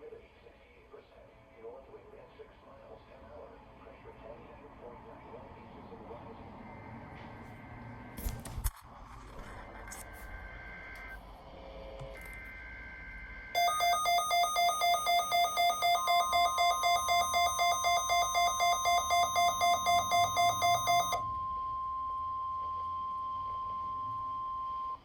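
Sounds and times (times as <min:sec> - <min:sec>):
steady warning alarm tone: 0:12.5 - 0:25.0
two-tone data warble: 0:13.6 - 0:21.2
rapid beeping alarm: 0:13.6 - 0:21.3.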